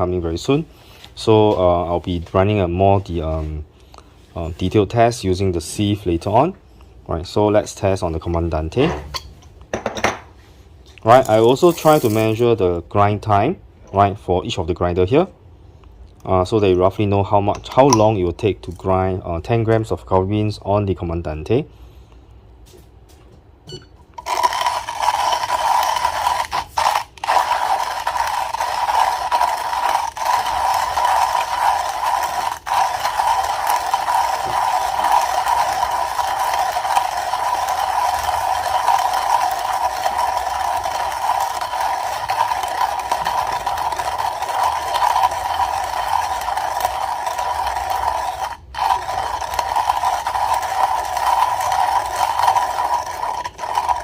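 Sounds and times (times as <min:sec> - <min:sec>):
manual coffee grinder crunching: 0:11.0 - 0:12.4, 0:24.2 - 0:54.0.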